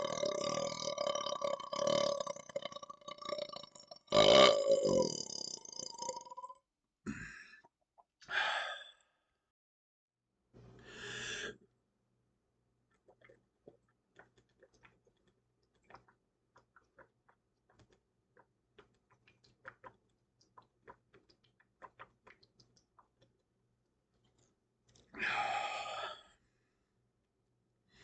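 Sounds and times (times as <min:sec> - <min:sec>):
mouth clicks and smacks: 0:12.9 - 0:25.2.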